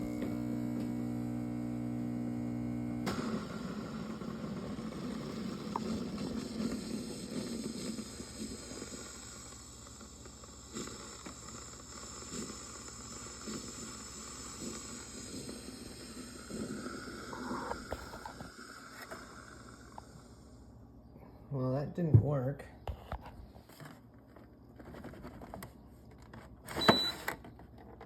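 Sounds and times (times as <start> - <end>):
espresso machine hissing and gurgling: 0.0 - 20.8.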